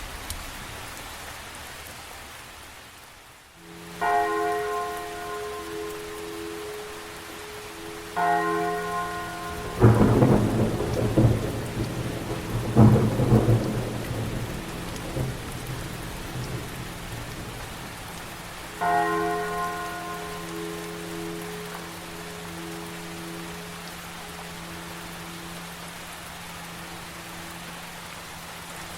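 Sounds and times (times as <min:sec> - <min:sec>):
steady rain: 0:00.0 - 0:28.9
deep bell tolling: 0:07.8 - 0:13.8
thunder rumbling: 0:09.4 - 0:19.0.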